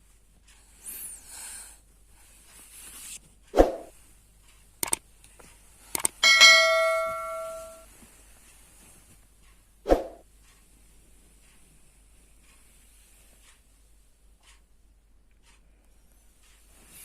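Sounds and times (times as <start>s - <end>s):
sharp clicks: 4.8s - 6.2s
metallic bell ring: 6.2s - 7.9s.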